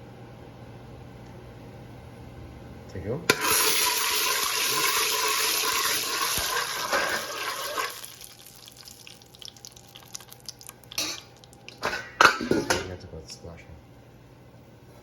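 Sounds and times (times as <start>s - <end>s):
sugar sizzling in hot oil: 3.4s - 11.8s.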